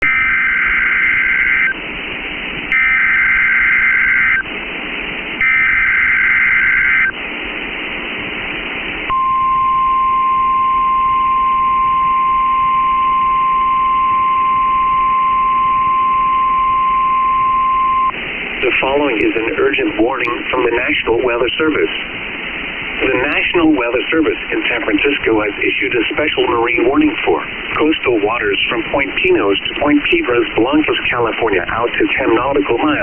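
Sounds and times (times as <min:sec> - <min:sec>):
steady warning alarm tone: 0:00.0 - 0:01.8, 0:02.7 - 0:04.5, 0:05.4 - 0:07.2, 0:09.1 - 0:18.2
radio hiss: 0:00.0 - 0:09.2, 0:13.5 - 0:33.0.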